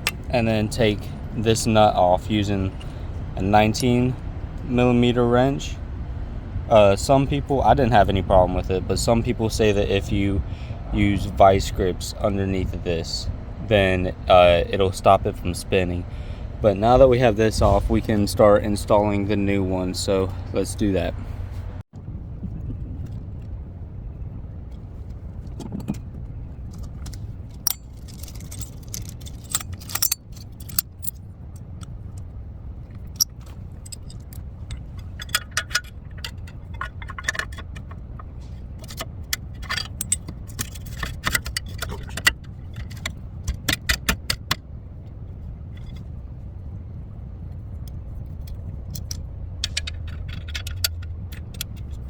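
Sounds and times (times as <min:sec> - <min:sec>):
steady low rumble: 0:00.0 - 0:52.0
metal tools clinking: 0:27.5 - 0:31.2, 0:33.0 - 0:44.5, 0:48.4 - 0:52.0.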